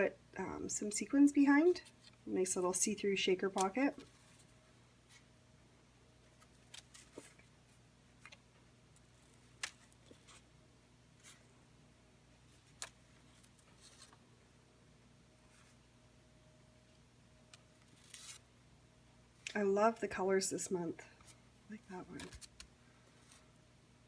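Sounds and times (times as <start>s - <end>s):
paper and cards rustling: 1.6s - 5.2s, 6.3s - 8.4s, 9.0s - 10.5s, 12.5s - 14.2s, 17.8s - 18.4s, 21.2s - 23.5s.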